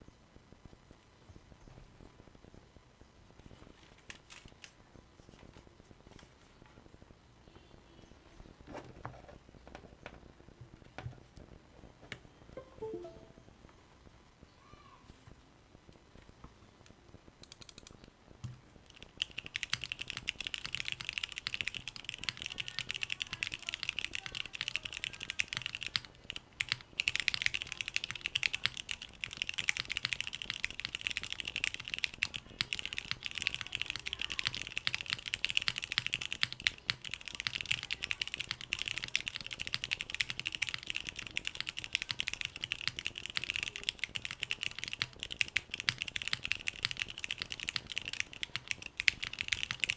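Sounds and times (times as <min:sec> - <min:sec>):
fast mechanical keyboard typing: 0:17.4 - 0:18.0, 0:18.9 - 0:49.9.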